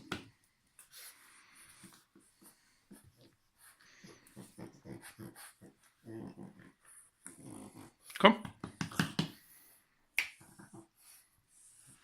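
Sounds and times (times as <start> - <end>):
puppy snoring: 4.0 - 8.1.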